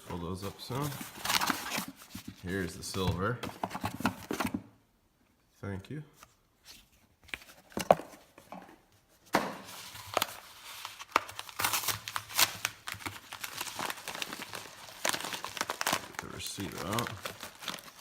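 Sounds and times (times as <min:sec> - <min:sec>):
packing material crinkling: 0:09.7 - 0:18.0.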